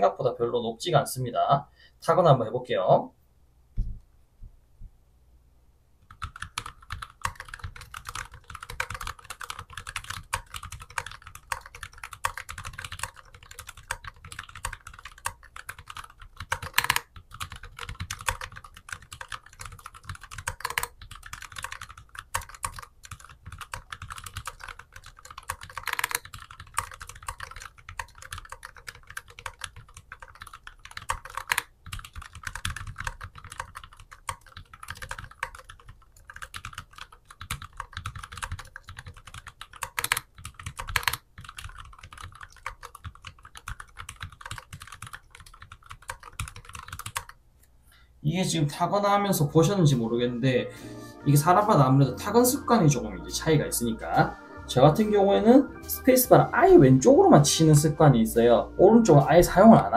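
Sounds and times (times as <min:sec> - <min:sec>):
mechanical keyboard typing: 0:06.1 - 0:47.4.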